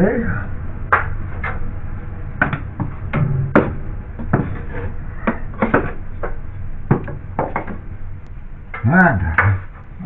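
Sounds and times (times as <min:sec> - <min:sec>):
stick knocking and scraping: 0:02.4 - 0:07.8, 0:08.7 - 0:09.8.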